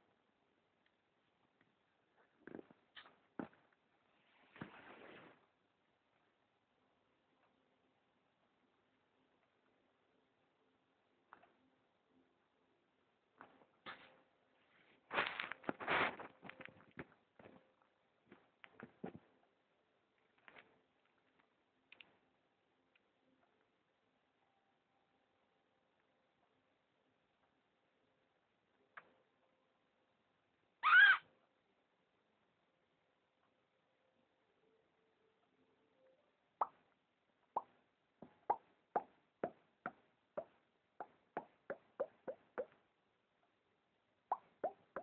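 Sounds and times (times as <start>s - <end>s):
faint soft rustle: 1.2s - 5.6s, 13.4s - 19.5s.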